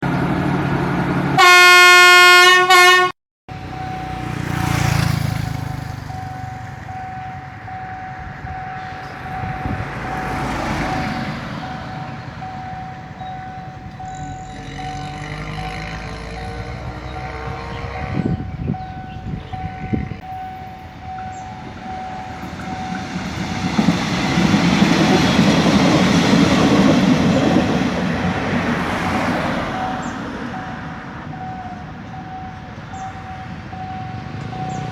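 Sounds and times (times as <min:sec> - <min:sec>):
train horn blast: 0:01.4 - 0:03.2, 0:14.0 - 0:18.6
level crossing warning tone: 0:01.4 - 0:34.9
train wheels and engine rumble: 0:03.5 - 0:34.9.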